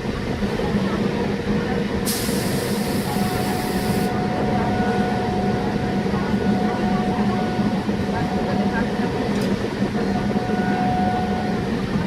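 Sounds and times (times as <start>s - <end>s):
train rumble on board: 0.0s - 12.0s.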